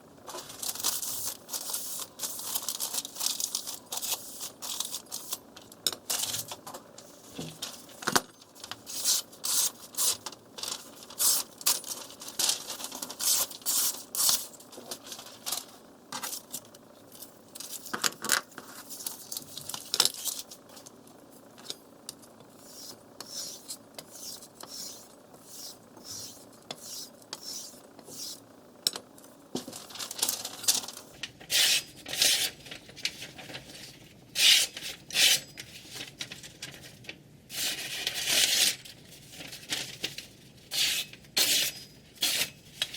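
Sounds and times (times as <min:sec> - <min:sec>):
knife scraping on whetstone: 0:22.6 - 0:28.4.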